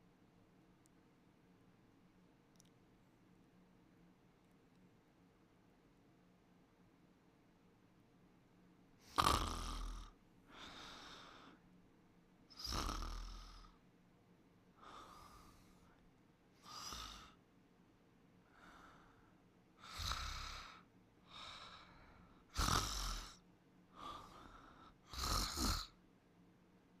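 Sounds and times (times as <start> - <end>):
loud rasping snore: 9.0 - 10.1, 12.5 - 13.8, 16.6 - 17.4, 19.8 - 20.8, 22.5 - 23.4, 25.0 - 25.9
soft breathing: 10.4 - 11.8, 14.8 - 17.4, 18.4 - 25.6.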